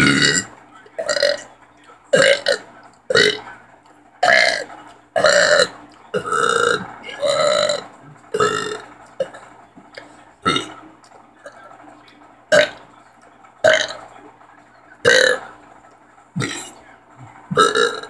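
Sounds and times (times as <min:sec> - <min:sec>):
person burping: 0:00.0 - 0:01.4, 0:02.2 - 0:03.4, 0:05.2 - 0:07.8, 0:08.4 - 0:09.4, 0:10.5 - 0:10.7, 0:13.7 - 0:14.0, 0:15.1 - 0:15.4, 0:16.4 - 0:16.7, 0:17.5 - 0:18.0.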